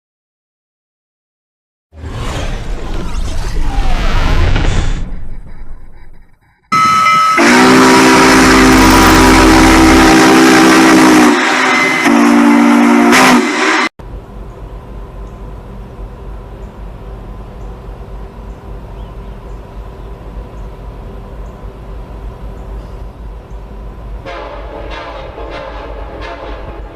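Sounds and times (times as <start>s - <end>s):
train low rumble: 5.0s - 13.2s, 14.0s - 26.9s
locomotive horn chord: 6.7s - 13.9s, 24.2s - 26.9s.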